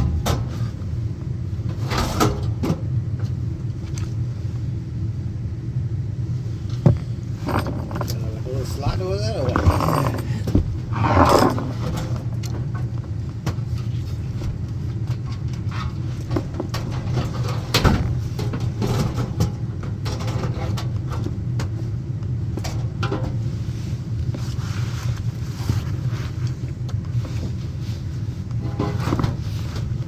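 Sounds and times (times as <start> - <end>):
steady low hum: 0.0 - 30.0
metal clicks and knocks: 6.8 - 12.7.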